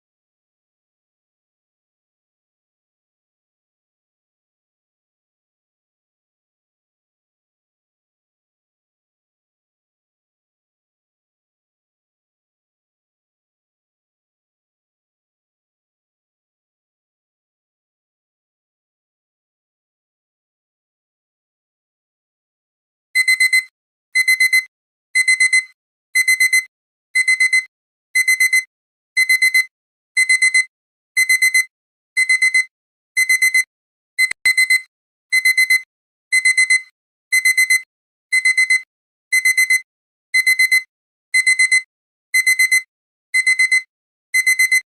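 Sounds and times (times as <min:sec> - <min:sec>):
alarm clock beeping: 0:23.2 - 0:39.8, 0:40.4 - 0:44.9.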